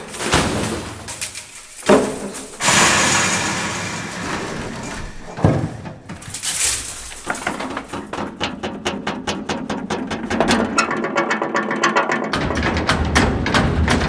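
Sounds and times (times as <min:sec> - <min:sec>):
metal-on-metal scrape: 0:00.0 - 0:05.5
metal impact: 0:00.0 - 0:08.7.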